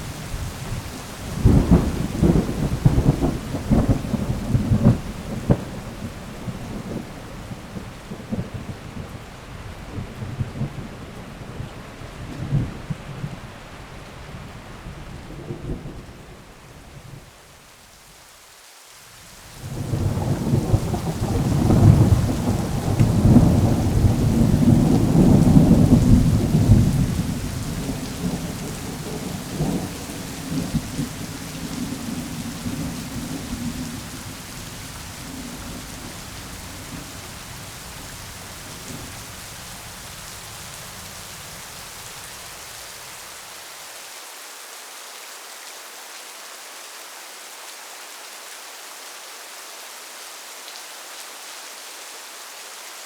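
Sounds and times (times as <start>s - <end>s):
steady falling rain: 0.0s - 53.0s
thunder rumbling: 19.6s - 39.4s.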